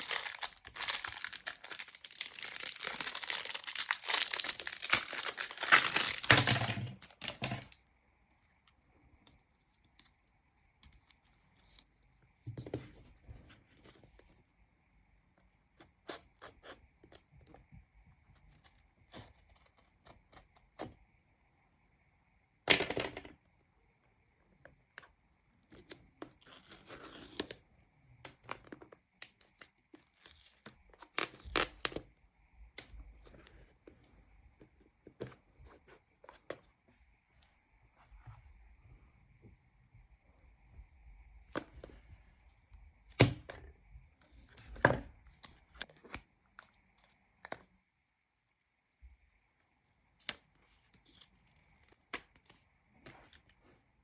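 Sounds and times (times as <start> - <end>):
paper strips tearing: 0.0 - 6.2
cardboard and wrapping rustling: 0.0 - 7.7.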